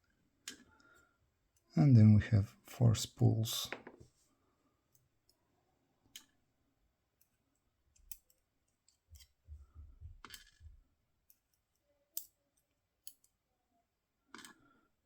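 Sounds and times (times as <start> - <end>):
small metal parts clicking: 14.3 - 14.6.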